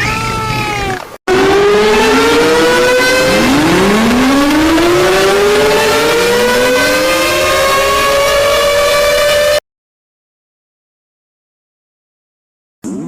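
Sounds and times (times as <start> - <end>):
sirens winding up: 1.3 - 9.6.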